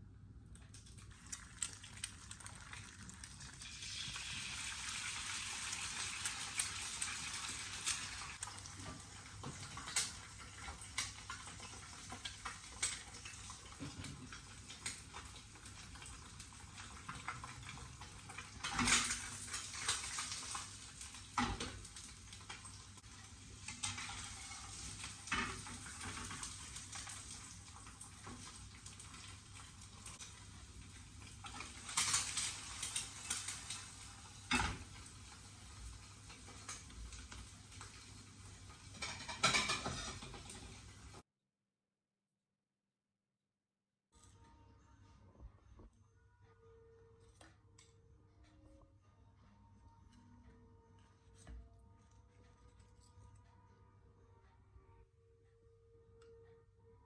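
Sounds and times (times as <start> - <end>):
sizzling or running water hiss: 1.0 - 41.2
utensils clinking against pots: 16.8 - 29.3, 31.2 - 38.0, 38.7 - 41.1.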